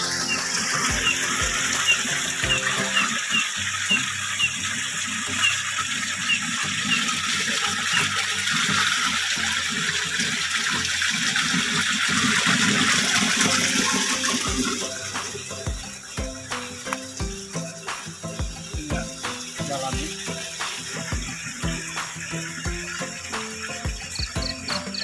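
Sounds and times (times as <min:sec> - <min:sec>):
faint high chirp: 0:24.0 - 0:25.0.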